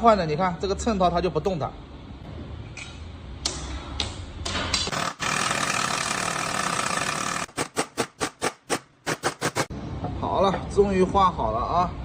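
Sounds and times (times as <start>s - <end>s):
power tool whirring: 4.9s - 9.7s.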